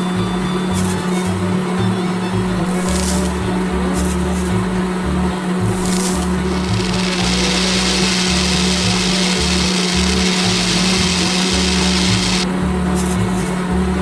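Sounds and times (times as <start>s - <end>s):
background music with bass: 0.0s - 14.0s
small motor whirring: 5.7s - 12.5s.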